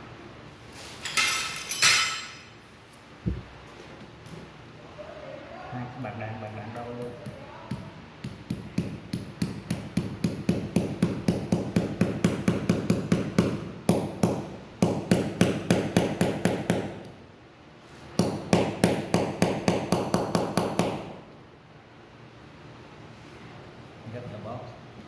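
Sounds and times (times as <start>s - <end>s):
rapid hammer taps on metal: 6.5s - 17.2s.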